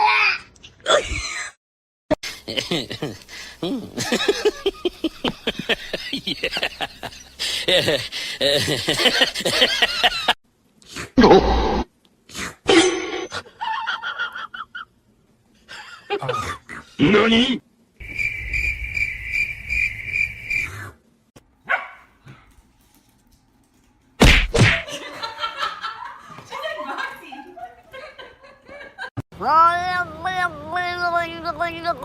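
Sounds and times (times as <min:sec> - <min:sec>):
dog barking: 0:21.6 - 0:22.2.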